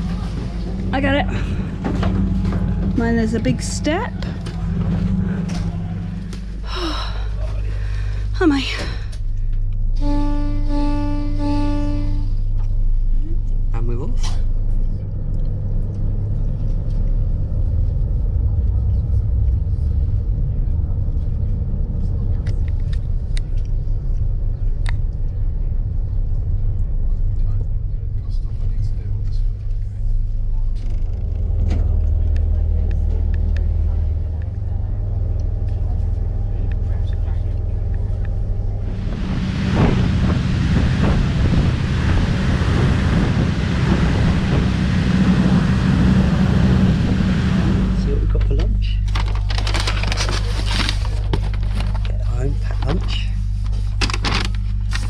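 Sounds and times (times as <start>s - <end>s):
boat engines rumbling: 0.0s - 55.0s
wind buffeting microphone: 38.6s - 48.1s.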